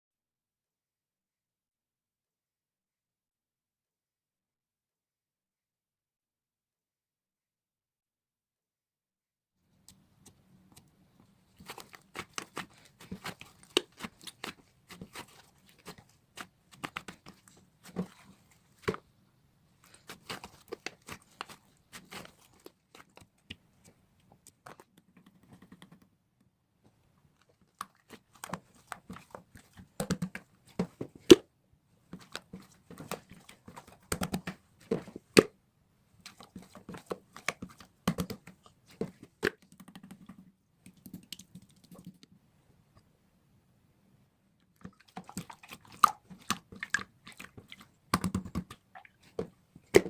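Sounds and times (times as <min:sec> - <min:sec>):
crinkling and rustling of handling: 0:09.8 - 0:25.6, 0:26.8 - 0:31.3, 0:32.0 - 0:35.4, 0:36.1 - 0:39.6, 0:44.6 - 0:50.0.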